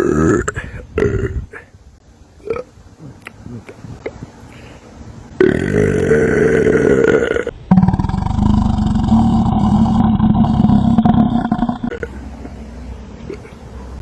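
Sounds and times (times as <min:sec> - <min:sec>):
man belching loudly: 0:00.0 - 0:01.7, 0:02.4 - 0:03.8, 0:05.4 - 0:12.2.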